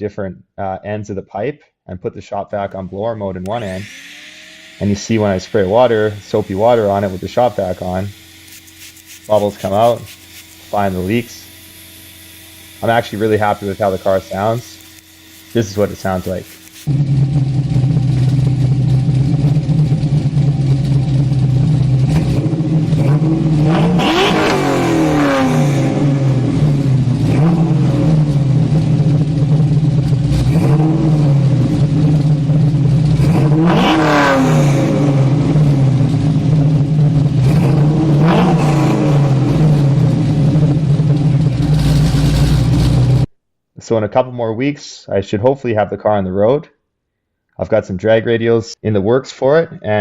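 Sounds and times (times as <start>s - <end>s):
car engine idling and revving: 3.4s - 15.5s, 16.4s - 43.3s.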